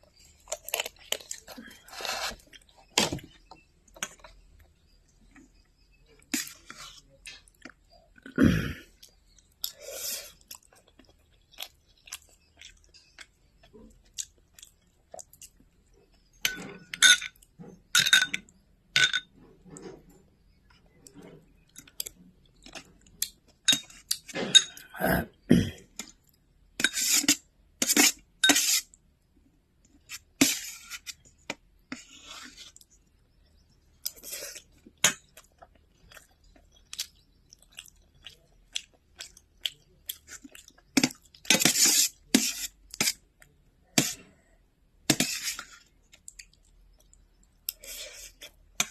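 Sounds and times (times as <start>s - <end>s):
crunchy chewing: 0.0s - 16.4s, 29.8s - 44.4s.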